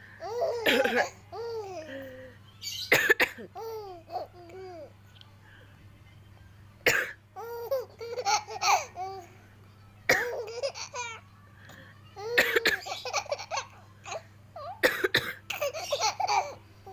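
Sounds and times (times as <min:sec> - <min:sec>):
woman coughing: 0:00.6 - 0:01.2, 0:02.9 - 0:03.5, 0:06.8 - 0:07.2, 0:10.1 - 0:10.5, 0:12.4 - 0:13.0, 0:14.8 - 0:15.7.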